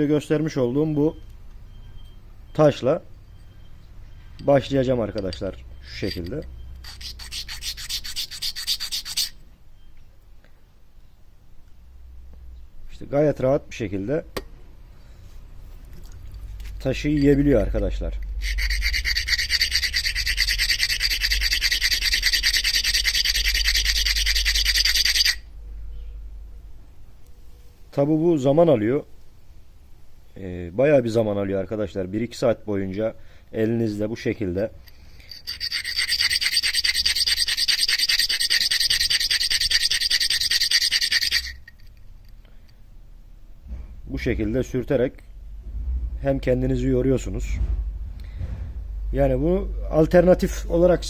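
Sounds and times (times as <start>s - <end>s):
stone scraping on sharpening stone: 5.1s - 9.4s, 16.7s - 25.4s, 34.8s - 41.9s.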